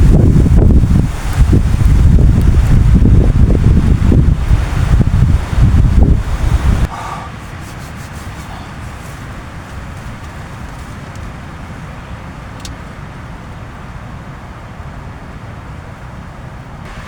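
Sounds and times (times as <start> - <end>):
heavy rain hissing: 0.0 - 12.5
strong wind rumbling: 0.0 - 14.0.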